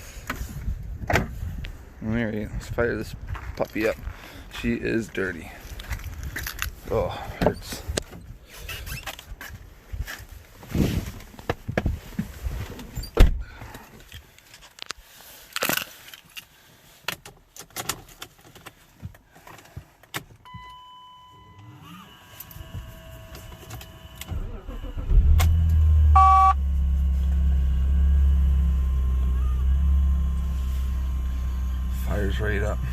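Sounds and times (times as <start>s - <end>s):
car engine starting and idling: 20.7s - 32.9s
steady electronic tone: 26.0s - 26.6s
short electronic beep: 26.1s - 26.6s.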